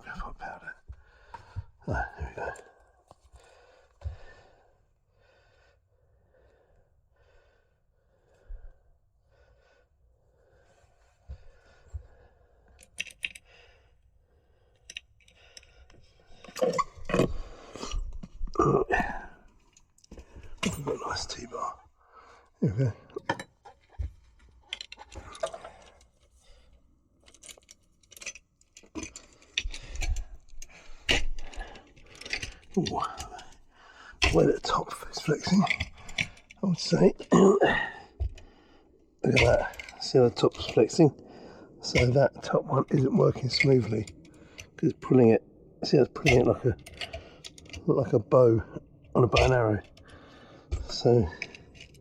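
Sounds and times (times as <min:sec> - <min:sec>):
metallic lock clicks and rattles: 0:12.8 - 0:13.5, 0:14.7 - 0:19.0, 0:23.1 - 0:26.2, 0:27.2 - 0:37.4, 0:41.8 - 0:45.3, 0:46.0 - 0:50.1, 0:50.7 - 0:52.0.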